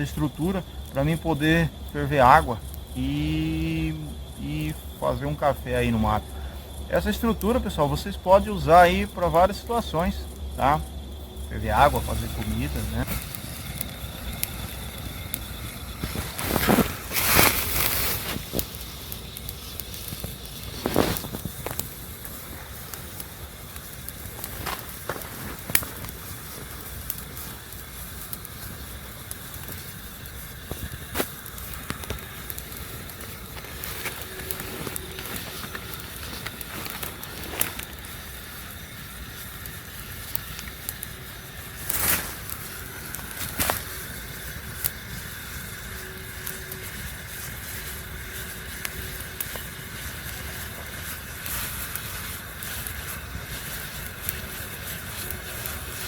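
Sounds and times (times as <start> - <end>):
campfire crackling: 0.0 - 56.0
sharp fire pops: 11.4 - 56.0.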